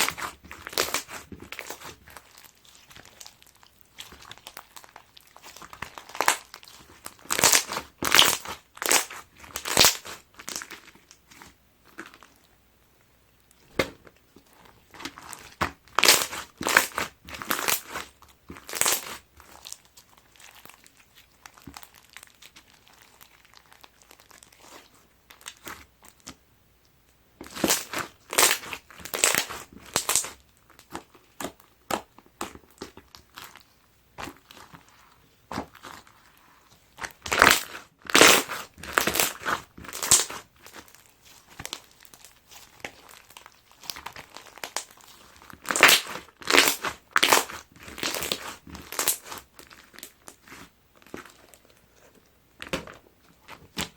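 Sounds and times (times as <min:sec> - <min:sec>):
slime squishing: 0:00.0 - 0:12.6, 0:13.3 - 0:26.4, 0:27.4 - 0:53.9
slime crackling pops: 0:45.6 - 0:49.4.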